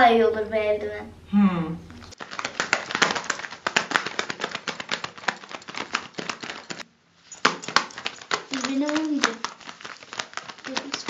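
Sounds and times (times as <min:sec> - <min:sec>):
rubber gloves flapping: 0:02.2 - 0:11.0.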